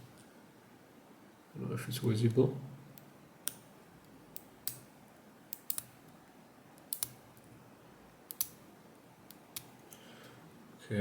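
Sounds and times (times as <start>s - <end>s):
small metallic clicks: 5.5s - 6.0s, 6.8s - 7.5s, 8.3s - 8.6s.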